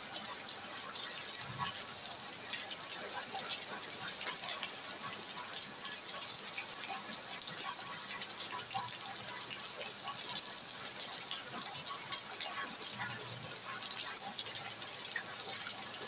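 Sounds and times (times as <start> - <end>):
steady rain hiss: 0.0 - 16.0.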